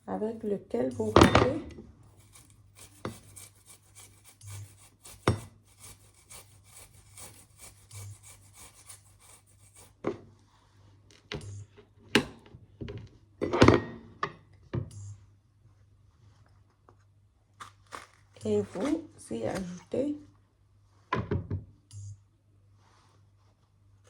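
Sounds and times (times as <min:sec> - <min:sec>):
ginger rasping on a grater: 0:00.8 - 0:10.0
sharp knocks and scrapes: 0:00.9 - 0:10.2.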